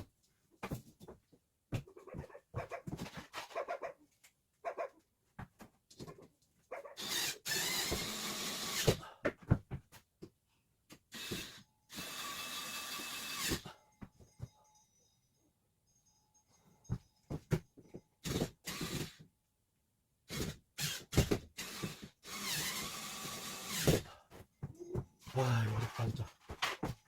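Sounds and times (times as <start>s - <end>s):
power drill running: 7.0s - 9.0s, 11.1s - 13.6s, 18.2s - 19.2s, 20.3s - 24.0s.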